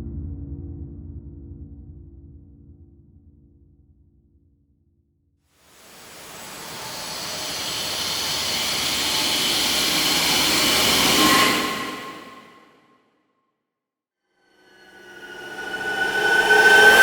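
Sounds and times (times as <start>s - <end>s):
loud rushing noise: 5.7s - 12.8s, 14.6s - 17.0s.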